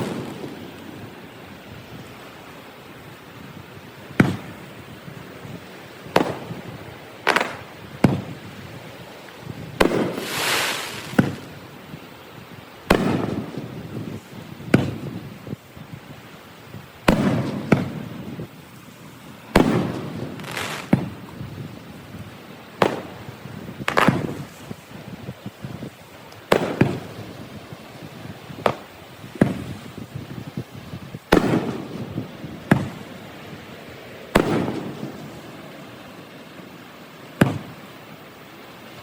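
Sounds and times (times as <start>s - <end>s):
fireworks bursting: 0.0s - 12.1s, 12.8s - 38.0s.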